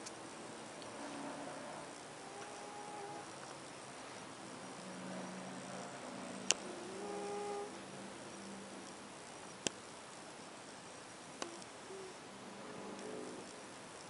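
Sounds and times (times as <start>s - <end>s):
sharp clicks: 9.6s - 9.8s.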